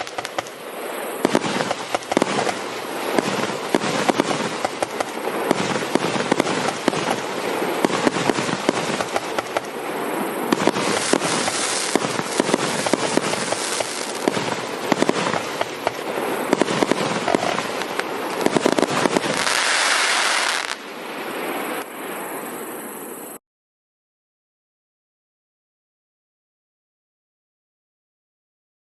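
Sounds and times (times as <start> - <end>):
firework cake shots: 0.0 - 0.6, 1.3 - 9.7, 10.5 - 20.7
firework hissing: 0.0 - 23.4.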